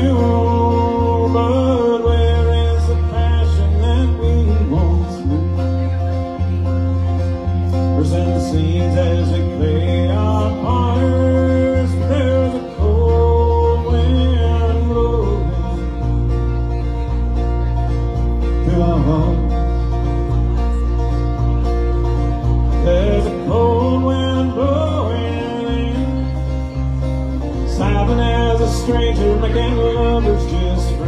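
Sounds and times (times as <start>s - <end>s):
acoustic bluegrass band: 0.0s - 31.0s
low bass: 0.0s - 31.0s
plucked strings: 0.0s - 31.0s
sliding melody line: 0.0s - 31.0s.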